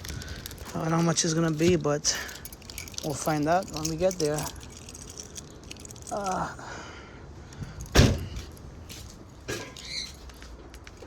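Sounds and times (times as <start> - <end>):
keys jangling: 0.0 - 6.8, 7.6 - 11.0
loud thump: 7.9 - 8.4.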